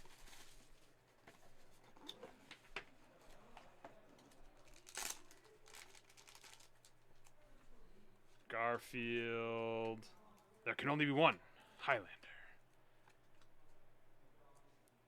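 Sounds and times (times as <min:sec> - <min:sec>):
card wrappers crinkling: 0:04.6 - 0:07.4.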